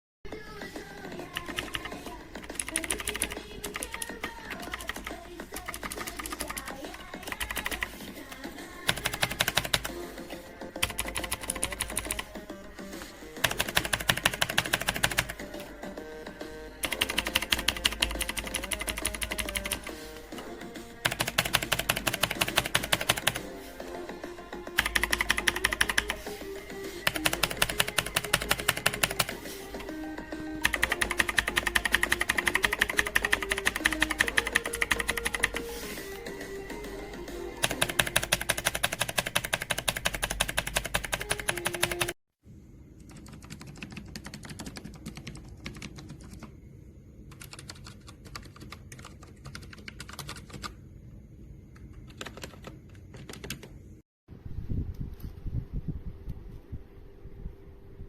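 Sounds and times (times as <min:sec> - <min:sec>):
background music: 0:00.3 - 0:40.0
mechanical keyboard typing: 0:01.2 - 0:10.0, 0:10.8 - 0:12.4, 0:13.4 - 0:15.7, 0:16.8 - 0:20.1, 0:21.0 - 0:23.5, 0:24.7 - 0:30.0, 0:30.6 - 0:35.8, 0:37.6 - 0:42.2, 0:43.0 - 0:46.6, 0:47.3 - 0:50.8, 0:51.8 - 0:53.8.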